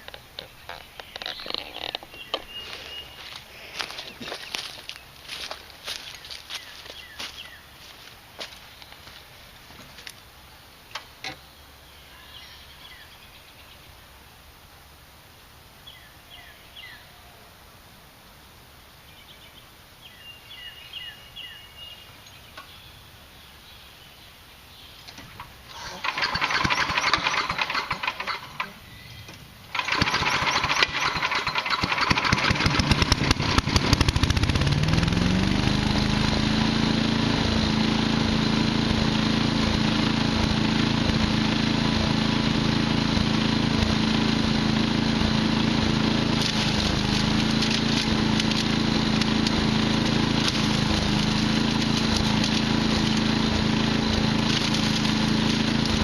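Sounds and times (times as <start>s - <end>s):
small petrol engine starting: 25.2s - 28.8s, 29.6s - 56.0s.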